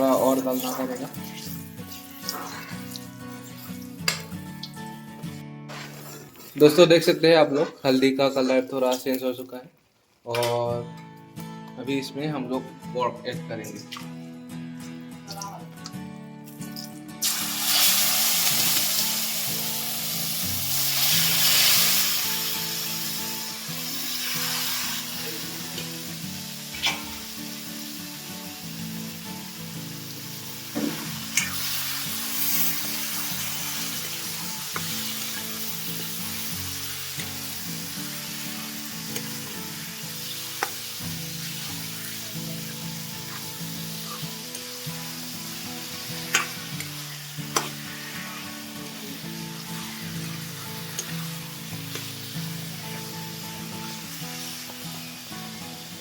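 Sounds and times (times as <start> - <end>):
meat sizzling in hot oil: 0.0 - 4.9, 16.6 - 56.0.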